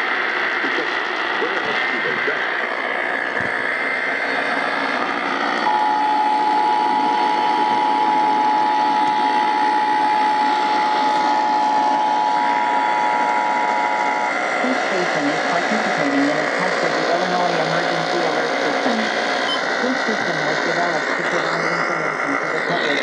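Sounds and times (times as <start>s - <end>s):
radio static: 0.0s - 23.0s
two-tone alert signal: 5.6s - 10.4s.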